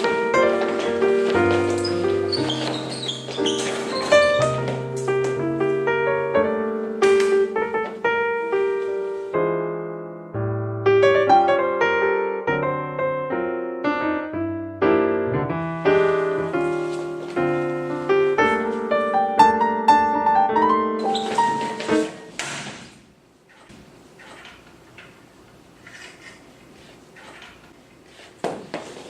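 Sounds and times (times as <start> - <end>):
solo piano music: 0.0 - 22.3.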